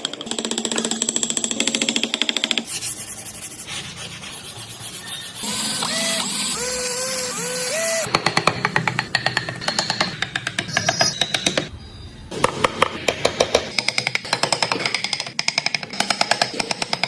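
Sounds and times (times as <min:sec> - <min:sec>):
wood sanding hiss with squeaks: 0:02.8 - 0:08.1.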